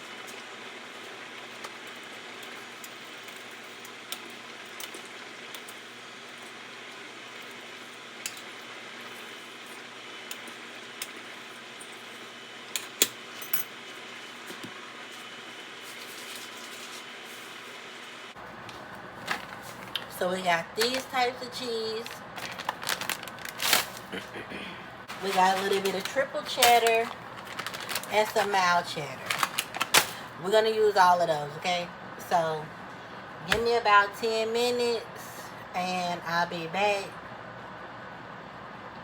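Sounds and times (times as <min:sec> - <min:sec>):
kitchen utensils clicking and clinking: 0:25.1 - 0:30.2.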